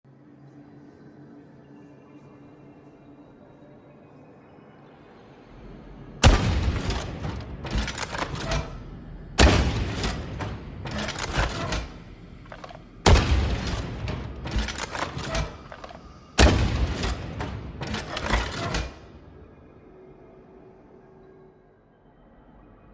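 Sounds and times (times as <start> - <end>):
grenade launcher shots: 6.2 - 8.8, 9.4 - 19.0.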